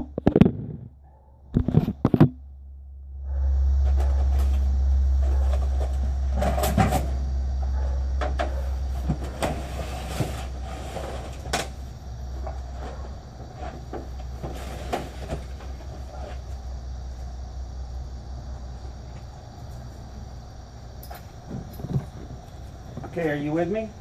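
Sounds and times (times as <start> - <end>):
low rumble: 0.0 - 14.8.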